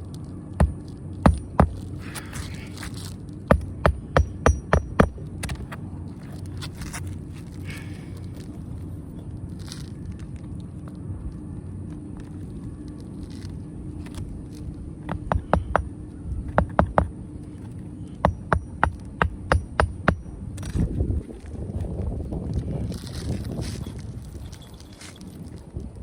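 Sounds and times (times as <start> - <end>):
low hum: 0.0 - 26.0
hammer striking nail in shingles: 0.6 - 1.8, 3.5 - 5.6, 15.1 - 15.9, 16.5 - 17.1, 18.2 - 20.3.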